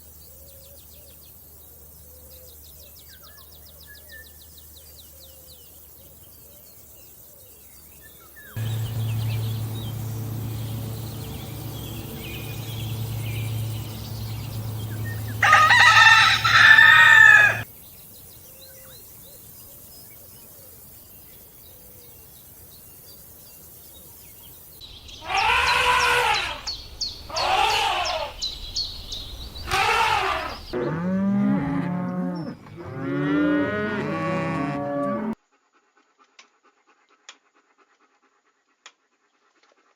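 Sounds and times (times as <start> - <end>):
steady low sound: 8.6 - 15.8
cattle mooing: 8.6 - 17.6, 29.7 - 35.4.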